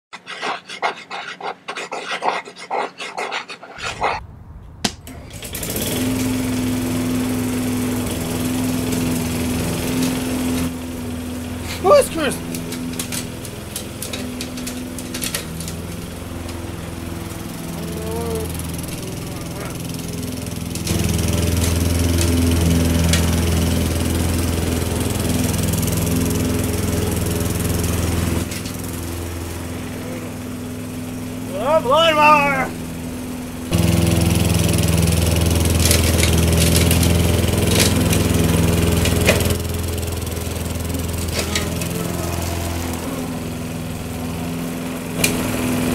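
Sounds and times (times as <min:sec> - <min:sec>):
rapid rhythmic panting: 0:00.1 - 0:04.2
lawn mower engine running: 0:03.8 - 0:45.9.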